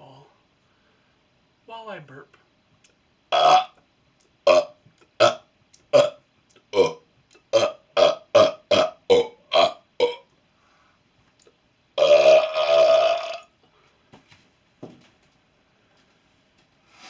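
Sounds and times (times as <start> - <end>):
man burping: 3.3 - 3.8, 4.4 - 10.3, 12.0 - 13.5.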